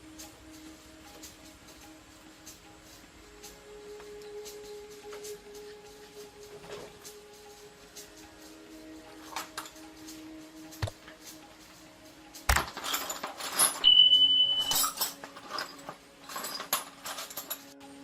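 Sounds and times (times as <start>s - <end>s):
metal hand tools clinking: 9.1s - 10.3s, 12.4s - 17.8s
scraping and clattering: 12.4s - 14.0s, 14.6s - 17.8s
short high-pitched squeak: 13.8s - 15.0s.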